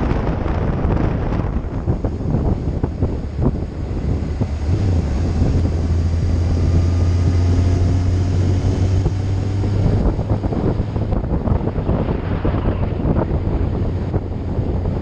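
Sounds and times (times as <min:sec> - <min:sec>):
vehicle engine humming: 0:00.0 - 0:15.0
wind buffeting microphone: 0:00.0 - 0:15.0.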